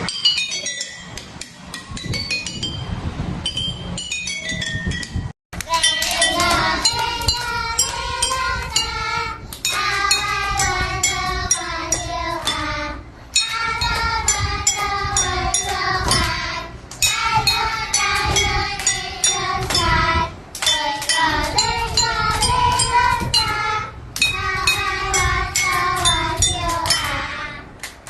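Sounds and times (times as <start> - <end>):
children's song singing over a beat: 5.6 - 27.8.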